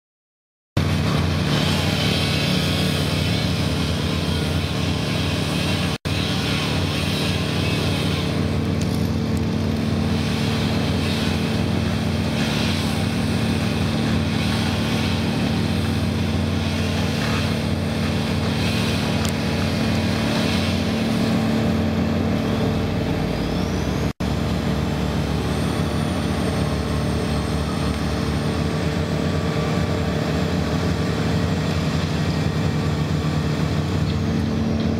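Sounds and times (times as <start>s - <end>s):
diesel engine running: 0.8s - 34.9s.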